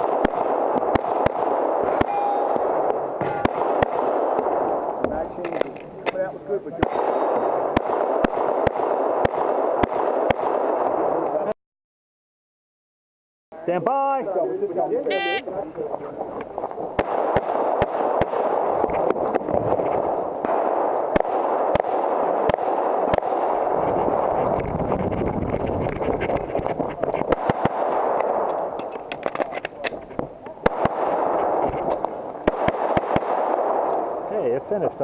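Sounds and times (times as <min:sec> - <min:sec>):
pistol shots: 0:00.0 - 0:11.3, 0:17.0 - 0:24.4, 0:27.2 - 0:29.9, 0:30.6 - 0:34.2
steady rushing noise: 0:15.8 - 0:32.5.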